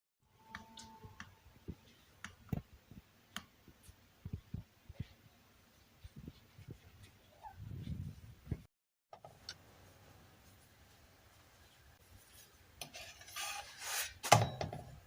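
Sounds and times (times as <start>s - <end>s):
rubbing scrape: 12.4s - 14.3s.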